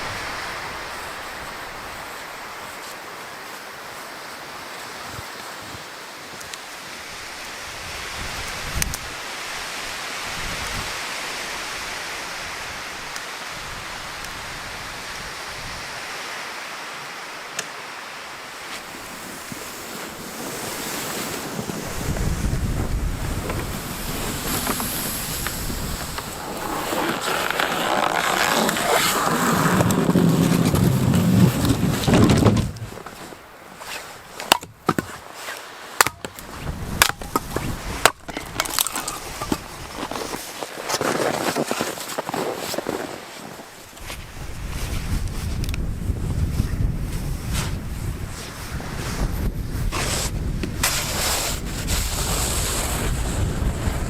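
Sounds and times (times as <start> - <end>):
wind buffeting microphone: 7.8 - 9.2, 18.8 - 33.5, 36.3 - 40.4, 44.0 - 54.0.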